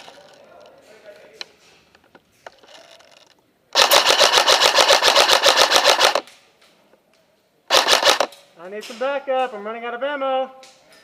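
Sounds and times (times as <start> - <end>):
airsoft rifle full-auto burst: 3.7 - 6.3, 7.7 - 8.4.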